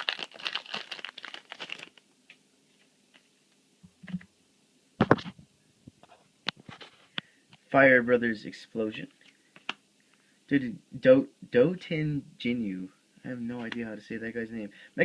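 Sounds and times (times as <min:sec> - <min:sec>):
foil wrapper crinkling and tearing: 0:00.0 - 0:02.0.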